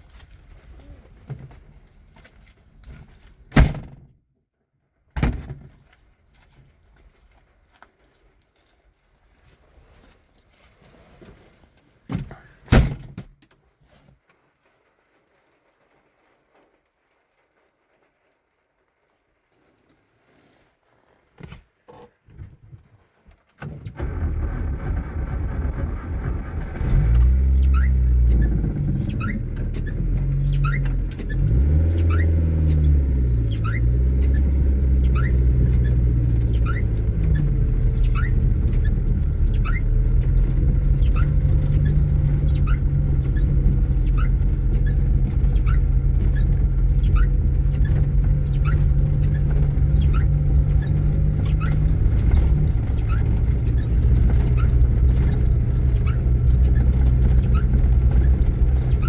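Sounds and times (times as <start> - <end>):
car engine revving through gears: 24.0 - 59.0
short high squeaks: 26.5 - 59.0.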